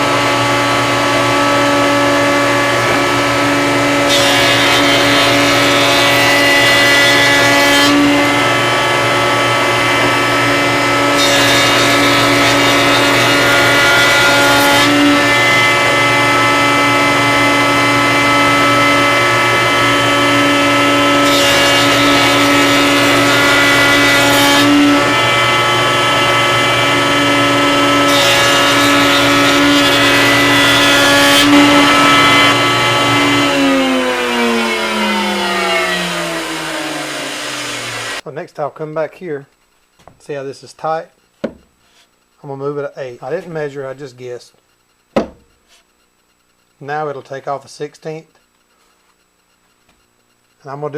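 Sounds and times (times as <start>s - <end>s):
router cutting wood: 0.0s - 38.2s
router running: 0.0s - 38.2s.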